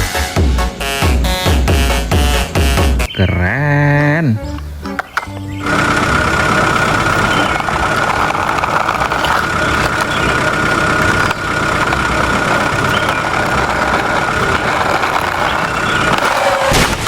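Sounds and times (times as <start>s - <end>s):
truck engine running: 4.6s - 17.0s
high whine: 5.6s - 17.0s.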